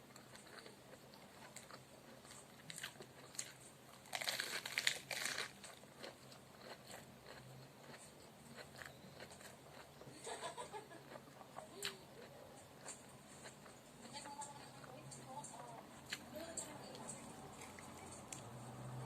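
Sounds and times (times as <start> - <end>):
mouth clicks and chewing: 0.0 - 10.1, 10.9 - 18.5
crunching lettuce: 0.0 - 14.9.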